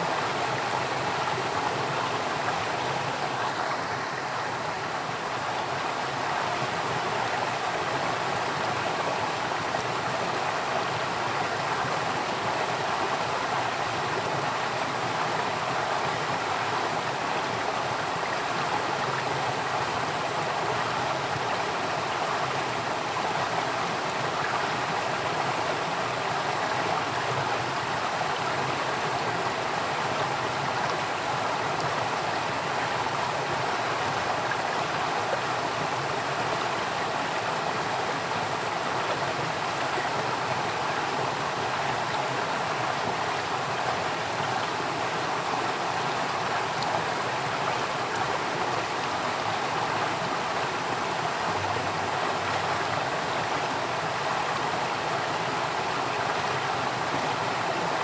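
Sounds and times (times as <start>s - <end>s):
stream flowing over rocks: 0.0s - 58.0s.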